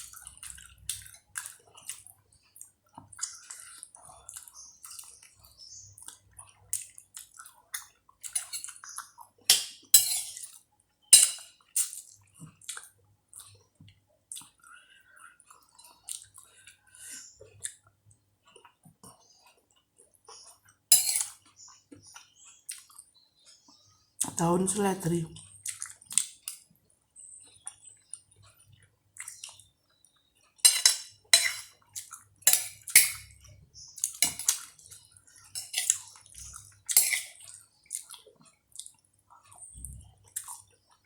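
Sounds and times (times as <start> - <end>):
wet chewing: 0.0 - 10.6, 11.2 - 23.6, 25.4 - 41.0.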